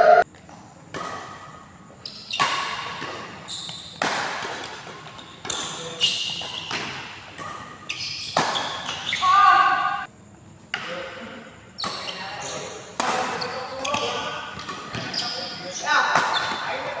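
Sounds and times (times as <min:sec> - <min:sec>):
rackets hitting shuttlecock: 0:00.9 - 0:01.5, 0:02.2 - 0:09.1, 0:13.0 - 0:15.2, 0:16.1 - 0:16.8.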